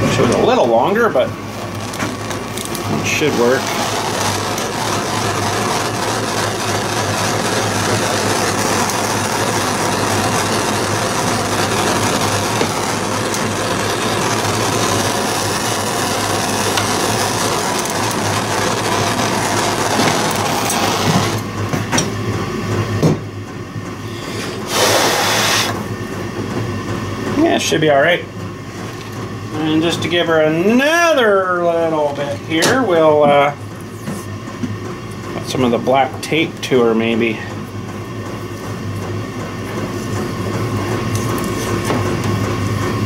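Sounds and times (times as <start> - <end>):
heat gun blowing: 1.4 - 21.5, 24.1 - 25.9.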